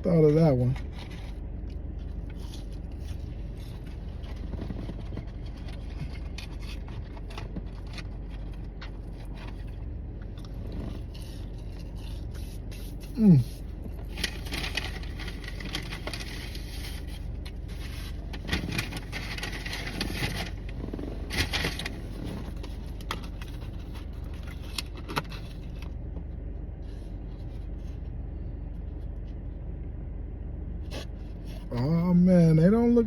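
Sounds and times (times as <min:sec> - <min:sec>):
steady low hum: 0:00.0 - 0:33.0
food packaging rustling: 0:14.0 - 0:25.8.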